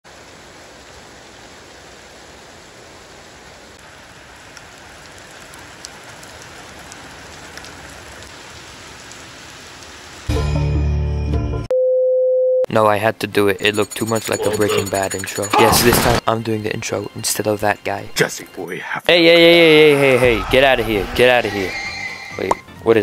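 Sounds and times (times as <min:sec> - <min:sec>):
steady rain hiss: 0:00.0 - 0:10.4
raindrops ticking: 0:03.0 - 0:10.3, 0:13.5 - 0:15.7.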